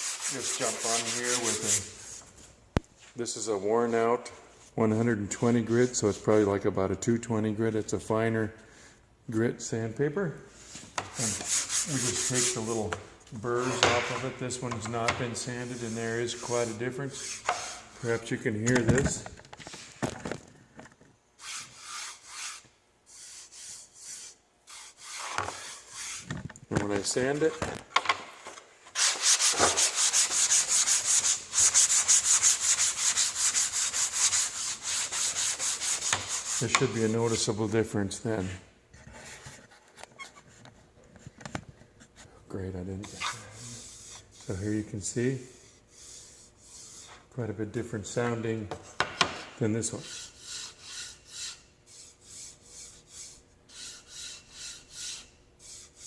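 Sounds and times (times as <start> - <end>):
sandpaper rubbing on wood: 0.0 - 2.2, 11.2 - 12.8, 15.5 - 18.0, 21.4 - 26.3, 29.0 - 37.4, 49.8 - 56.0.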